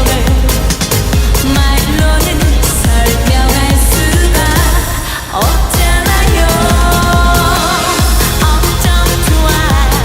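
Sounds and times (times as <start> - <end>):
music with drum beat and melody: 0.0 - 10.0.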